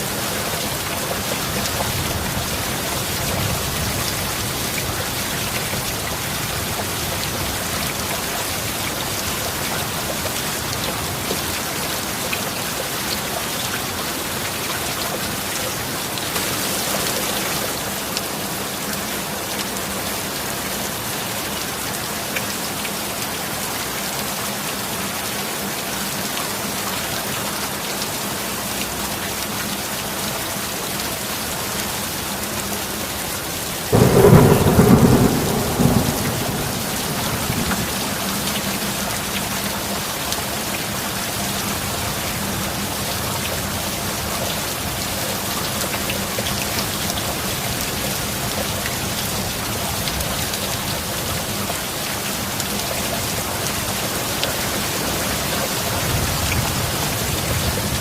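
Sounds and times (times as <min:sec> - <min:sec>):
heavy rain hissing: 0:00.0 - 0:24.8, 0:29.8 - 0:58.0
thunderclap rumbling: 0:33.9 - 0:39.3.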